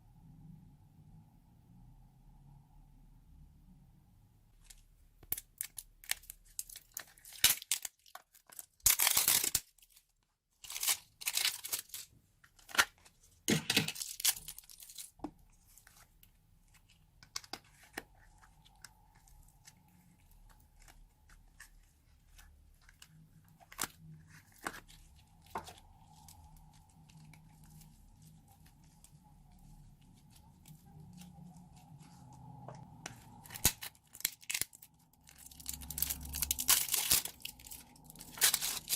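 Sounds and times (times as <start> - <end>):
slime crackling and popping: 5.2 - 9.8, 32.9 - 38.9.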